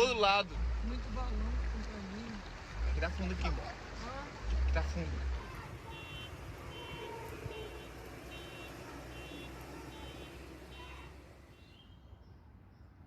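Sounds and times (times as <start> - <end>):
electronic vehicle beeper: 5.9 - 12.0.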